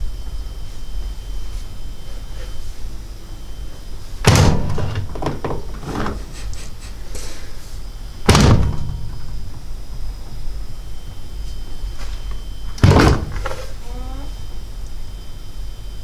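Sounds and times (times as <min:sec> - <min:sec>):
washing machine door clunks: 0:04.2 - 0:06.8, 0:08.2 - 0:10.4, 0:12.7 - 0:13.9
door latch clicks and rattles: 0:04.3 - 0:06.2, 0:08.3 - 0:09.6.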